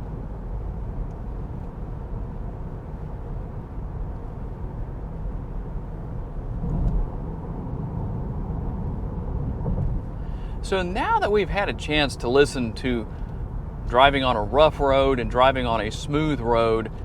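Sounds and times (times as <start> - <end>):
low thump: 6.6 - 7.2, 9.5 - 10.1.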